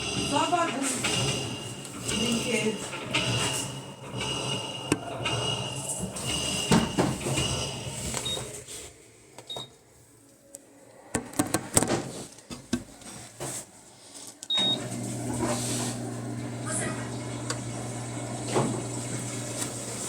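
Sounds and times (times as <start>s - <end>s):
washing machine humming: 0.0s - 8.8s, 14.5s - 20.0s.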